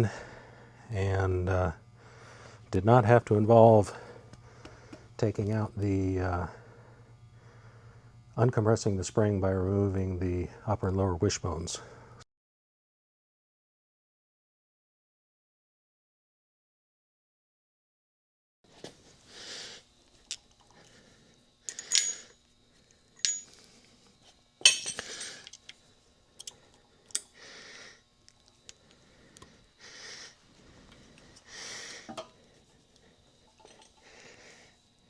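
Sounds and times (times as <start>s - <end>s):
metal tools clinking: 21.7s - 22.4s, 23.2s - 23.6s, 24.6s - 25.8s, 33.5s - 34.0s.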